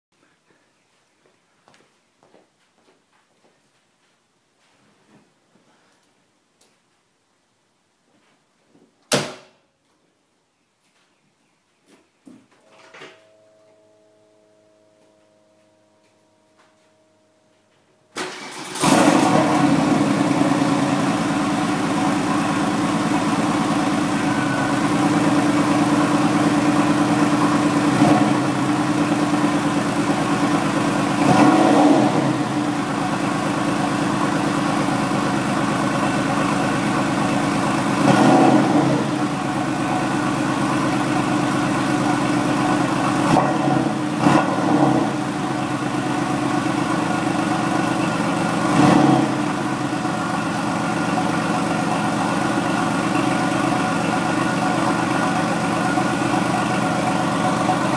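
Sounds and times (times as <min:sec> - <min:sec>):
car engine idling and revving: 0:18.2 - 0:57.9.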